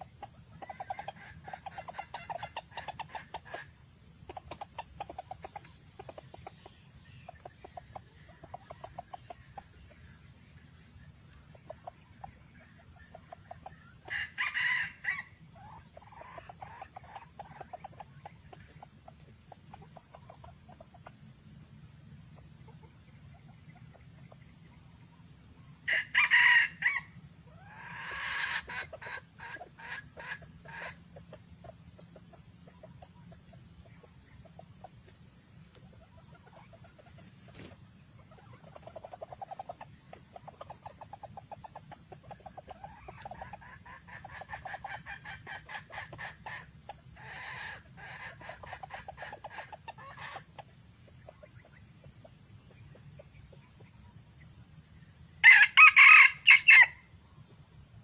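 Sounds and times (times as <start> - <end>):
soft clucking: 0.0 - 10.2, 27.8 - 53.9
high insect drone: 0.0 - 58.0
roosters crowing: 14.0 - 16.8, 25.9 - 29.2, 55.4 - 57.0.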